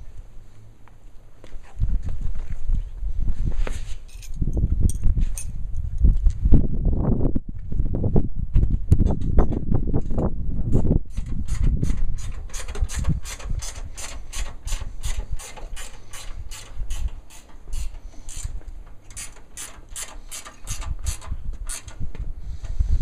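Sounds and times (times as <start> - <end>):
ratchet wrench clicking: 12.2 - 22.0.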